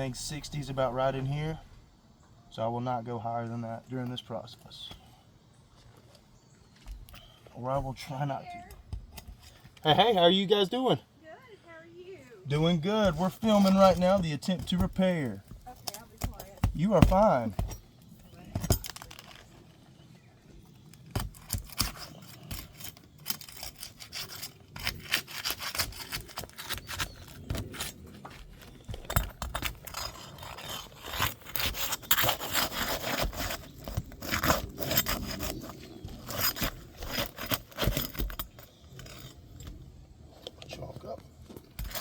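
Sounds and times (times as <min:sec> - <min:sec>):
scraping and rubbing on shingles: 0:12.5 - 0:19.9, 0:20.9 - 0:39.8.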